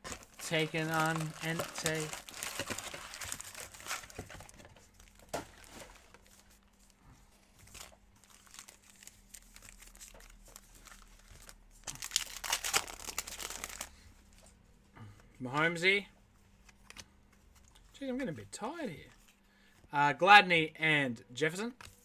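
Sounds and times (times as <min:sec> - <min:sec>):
card pack wrappers crinkling: 0:00.0 - 0:06.5, 0:07.6 - 0:14.0
handling crackles: 0:00.0 - 0:06.9.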